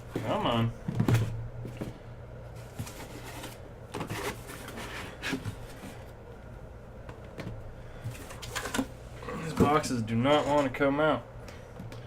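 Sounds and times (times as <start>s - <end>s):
steady low hum: 0.0s - 12.0s
cardboard boxes scraping: 2.6s - 6.0s.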